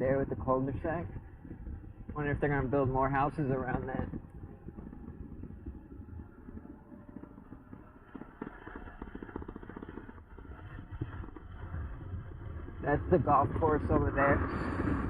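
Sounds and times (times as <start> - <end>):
bike rolling and rattling: 0.0 - 15.0
wind rumbling on microphone: 0.0 - 15.0
fast clattering ticks: 4.1 - 13.2.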